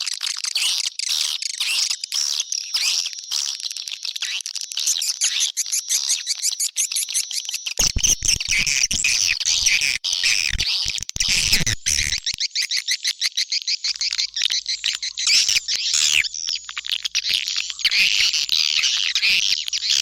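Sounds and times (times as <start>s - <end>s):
high twittering bird chirps: 7.8s - 20.0s.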